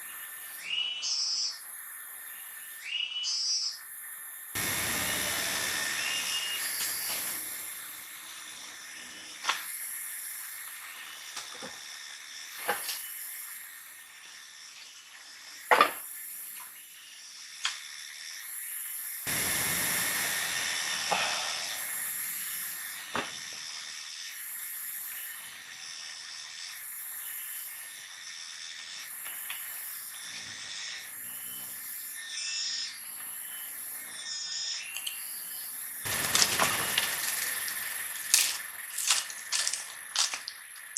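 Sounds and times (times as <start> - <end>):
hiss: 4.5 - 32.2, 36.0 - 40.9.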